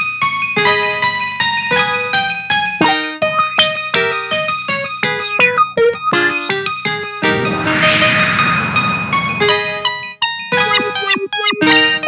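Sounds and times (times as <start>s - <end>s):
polyphonic ringtone melody: 10.6s - 12.0s.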